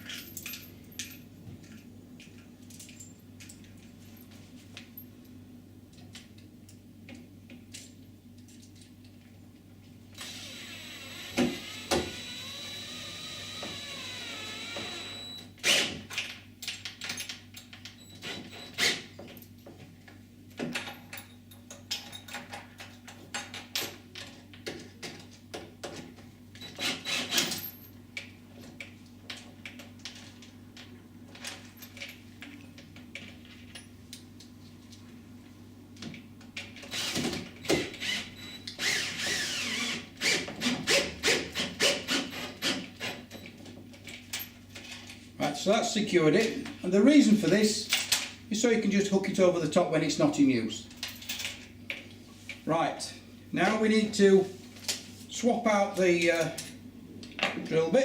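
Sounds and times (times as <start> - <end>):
cordless drill driving screw: 10.2 - 15.9, 26.6 - 27.4, 36.9 - 42.8.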